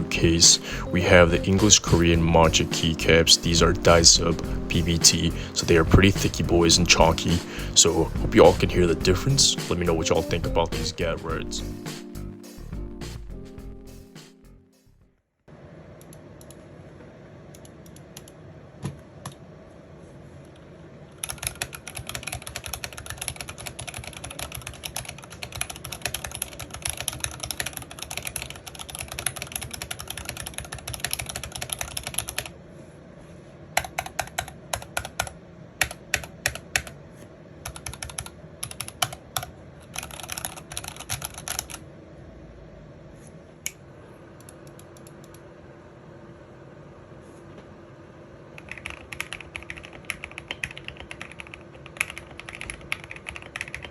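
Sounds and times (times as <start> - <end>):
mechanical keyboard typing: 21.2 - 32.5, 33.8 - 37.0, 37.6 - 41.8, 48.6 - 53.9.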